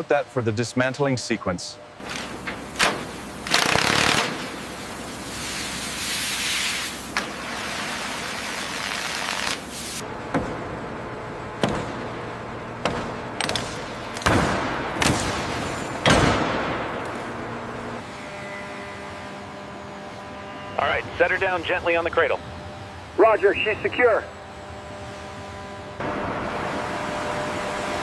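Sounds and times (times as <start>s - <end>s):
sharp bangs and knocks: 11.6s - 12.2s, 12.8s - 17.3s.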